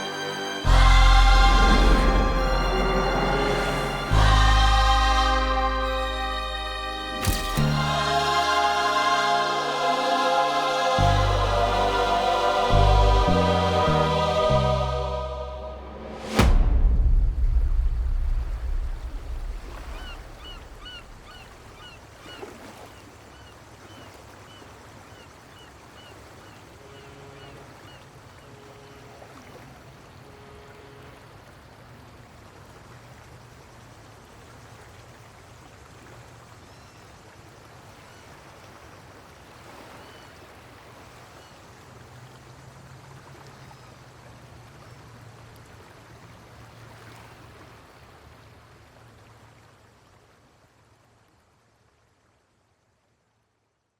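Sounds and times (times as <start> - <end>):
low hum: 0.7 - 9.4, 11.0 - 21.8.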